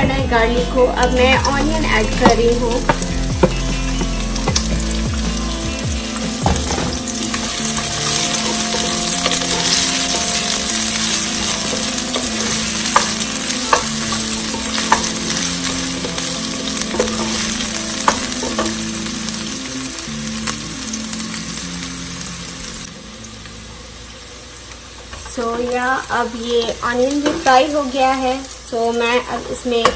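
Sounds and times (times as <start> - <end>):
onion sizzling in hot oil: 0.0 - 29.9
utensil clicking against pan: 6.2 - 18.9.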